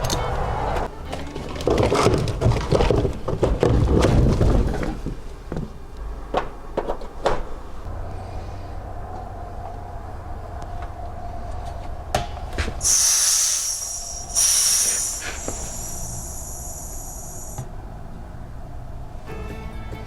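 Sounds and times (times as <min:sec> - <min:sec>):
faint steady tone: 0:12.8 - 0:17.6
steady machine hum: 0:12.8 - 0:17.6.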